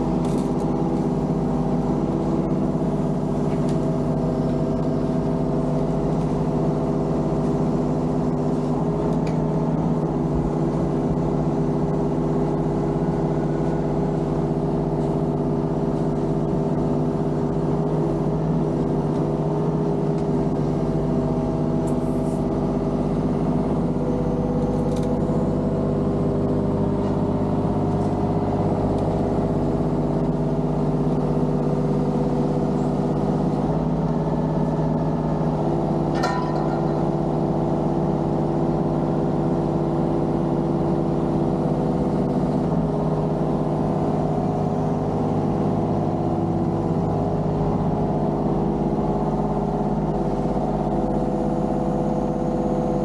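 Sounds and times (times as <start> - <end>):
diesel engine humming: 0.0 - 53.0.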